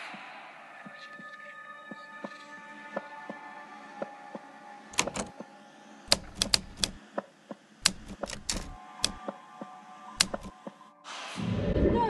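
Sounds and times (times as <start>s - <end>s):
typewriter keys striking: 5.0s - 5.4s, 6.1s - 7.0s, 7.8s - 9.3s, 10.2s - 10.6s.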